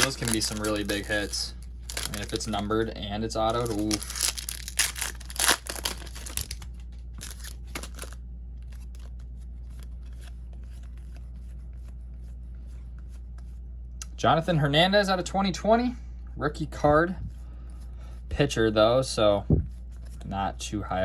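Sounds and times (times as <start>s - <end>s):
cards ticking when handled: 0.0s - 2.7s
foil wrapper tearing and crinkling: 0.0s - 2.7s, 3.4s - 8.2s.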